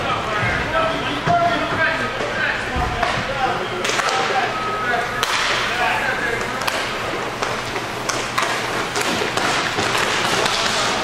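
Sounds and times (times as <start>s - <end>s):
hockey sticks clacking: 3.8s - 4.4s, 5.2s - 5.7s, 6.4s - 11.0s.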